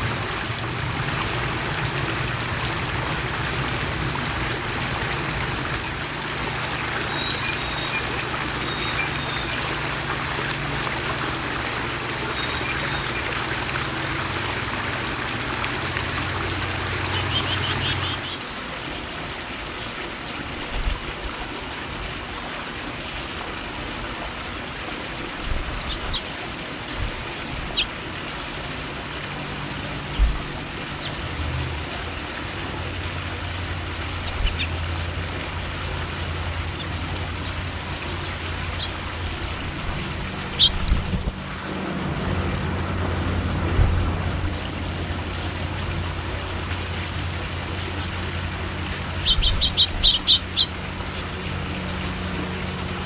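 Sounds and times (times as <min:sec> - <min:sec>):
small birds chirping: 0:00.0 - 0:18.4, 0:49.2 - 0:50.8
low hum: 0:31.2 - 0:53.0.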